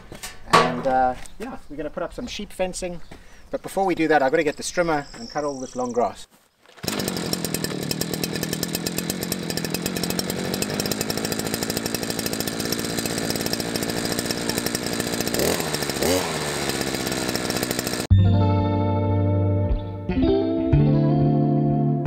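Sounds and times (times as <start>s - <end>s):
strimmer engine cutting grass: 6.7s - 18.1s.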